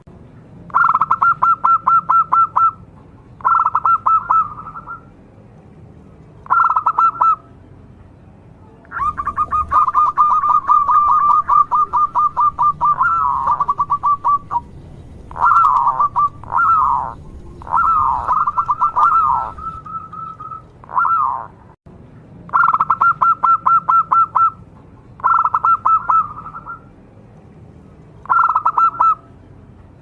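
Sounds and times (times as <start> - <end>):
dove cooing staccato notes: 0.7 - 2.8, 3.4 - 5.0, 6.4 - 7.4, 8.9 - 14.7, 15.3 - 21.6, 22.5 - 24.6, 25.2 - 26.8, 28.2 - 29.2.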